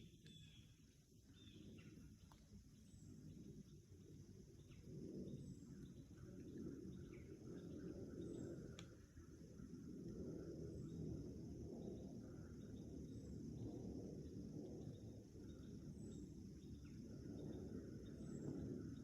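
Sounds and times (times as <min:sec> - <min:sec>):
bird chirps: 0:00.0 - 0:01.9
wind on microphone: 0:03.0 - 0:19.0
light click: 0:08.7 - 0:09.0.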